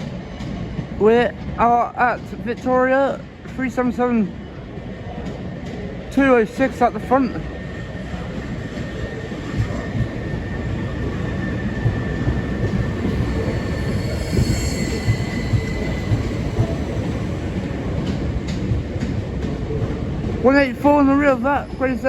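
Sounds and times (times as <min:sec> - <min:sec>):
train wheels rumbling on rails: 0:00.0 - 0:22.0
knocks from train wheels: 0:11.8 - 0:20.4.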